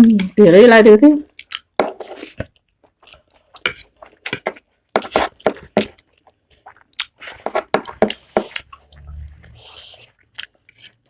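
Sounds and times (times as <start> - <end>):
wet chewing and mouth smacks: 1.2 - 1.8, 2.4 - 4.7, 5.3 - 11.0.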